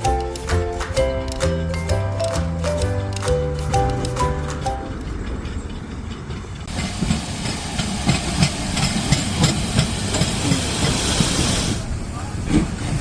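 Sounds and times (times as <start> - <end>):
steam train rumble: 0.0 - 13.0
loud steam hiss: 6.7 - 13.0.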